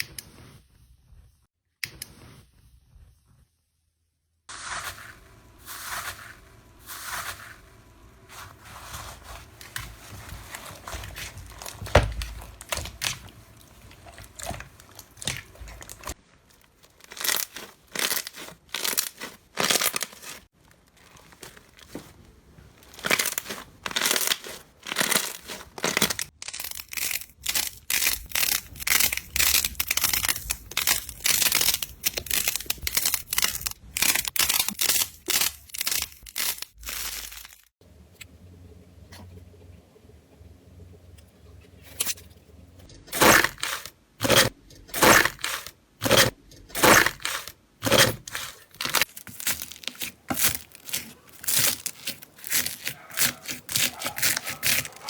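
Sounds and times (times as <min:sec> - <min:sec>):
slime crackling and popping: 0:48.8 - 0:55.0.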